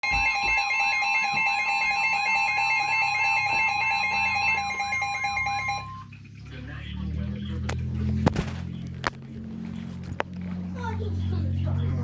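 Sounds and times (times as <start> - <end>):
high alarm tone: 0.0 - 6.2.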